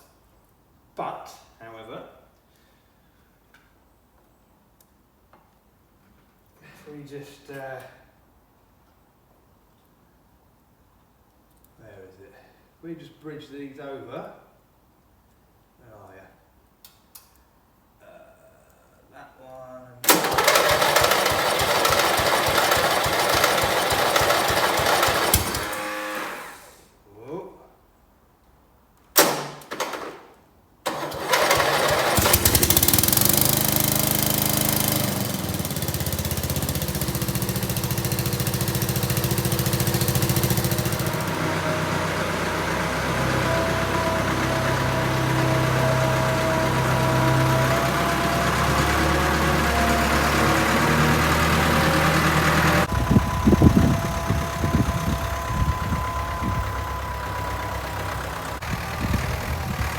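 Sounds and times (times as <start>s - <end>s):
mower engine cranking and running: 20.0s - 26.9s, 29.2s - 30.2s, 30.9s - 59.9s.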